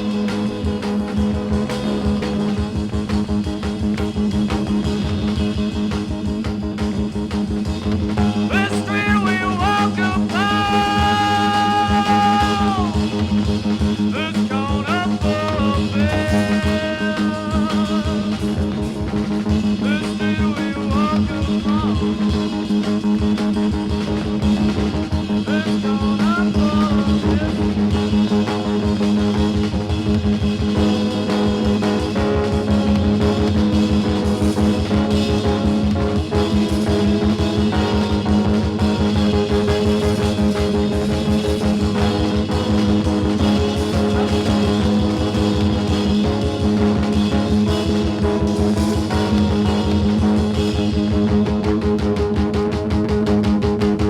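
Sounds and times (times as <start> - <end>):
punk rock song from vinyl: 0.0 - 54.0
man singing: 8.2 - 19.0, 19.7 - 22.9, 25.3 - 28.6.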